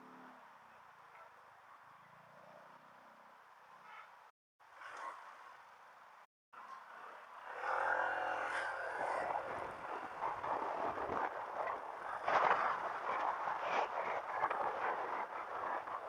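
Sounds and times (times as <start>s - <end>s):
motorcycle engine revving: 7.3s - 13.8s
rushing wind noise on microphone: 7.5s - 16.0s.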